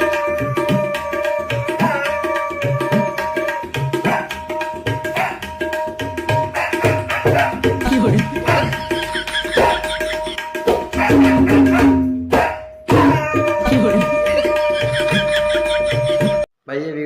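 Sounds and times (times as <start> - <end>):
tabla playing fast rhythm: 0.0 - 16.5.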